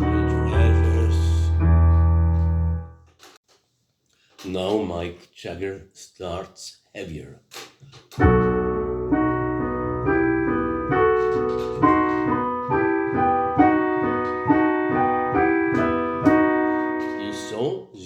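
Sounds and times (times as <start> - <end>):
piano playing sustained chords: 0.0 - 2.9, 8.3 - 17.5.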